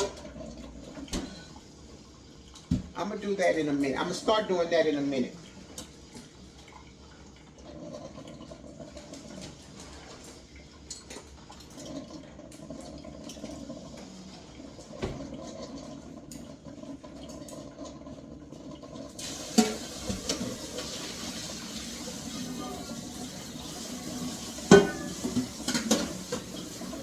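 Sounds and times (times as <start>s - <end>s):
water running from tap: 0.0s - 27.0s
dishes clinking: 24.6s - 26.6s.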